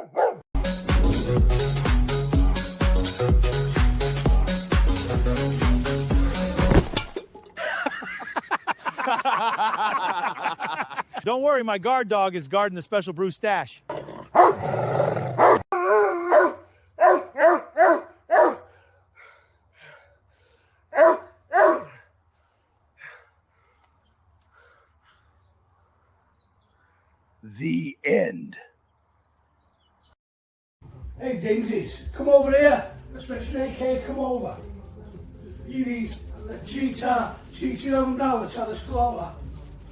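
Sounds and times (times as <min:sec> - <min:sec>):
dog barking: 0:00.0 - 0:00.4, 0:14.4 - 0:14.6, 0:15.4 - 0:18.7, 0:20.9 - 0:22.0
electronic dance music: 0:00.6 - 0:06.5.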